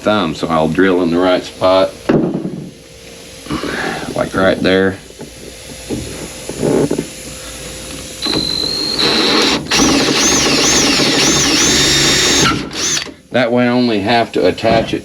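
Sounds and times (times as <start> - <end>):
electric drill whining: 7.9 - 14.2.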